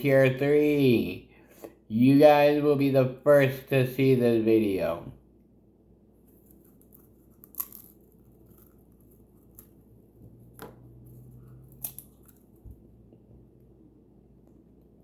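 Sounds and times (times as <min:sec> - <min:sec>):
popcorn crunching: 0:06.3 - 0:09.9.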